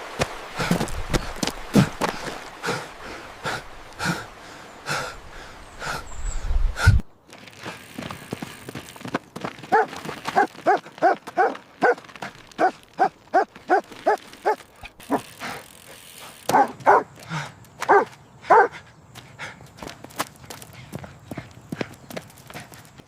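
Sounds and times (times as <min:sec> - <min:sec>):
dog barking: 0:09.7 - 0:12.0, 0:12.6 - 0:15.2, 0:16.5 - 0:17.1, 0:17.9 - 0:18.8.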